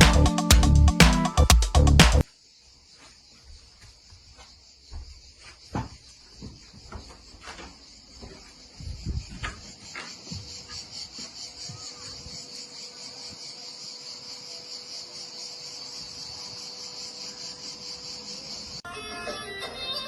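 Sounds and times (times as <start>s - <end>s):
music: 0.0s - 2.2s, 18.8s - 20.0s
insects chirping: 2.2s - 20.0s.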